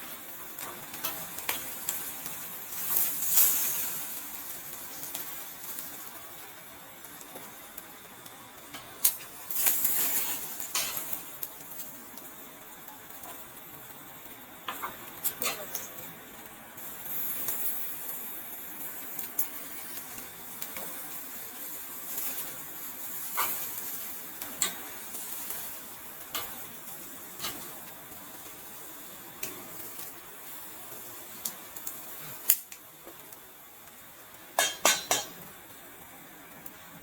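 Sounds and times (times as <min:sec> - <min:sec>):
faint hiss: 0:00.0 - 0:37.0
cutlery and dishes clinking: 0:34.6 - 0:35.4.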